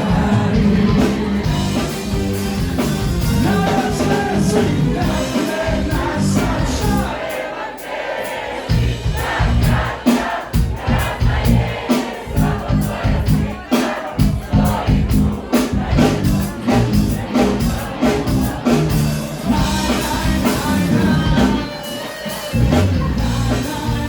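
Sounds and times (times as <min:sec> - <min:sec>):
crowd voices: 0:00.0 - 0:24.0
live pop-folk band with singing: 0:00.0 - 0:24.0.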